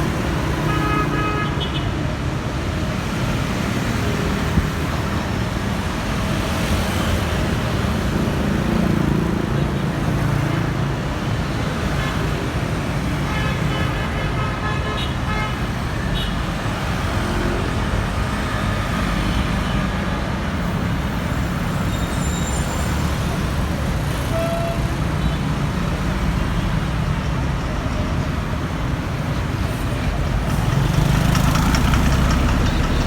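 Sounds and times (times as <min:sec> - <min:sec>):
traffic rumble: 0:00.0 - 0:33.0
vehicle horn: 0:00.6 - 0:01.9, 0:24.2 - 0:25.4.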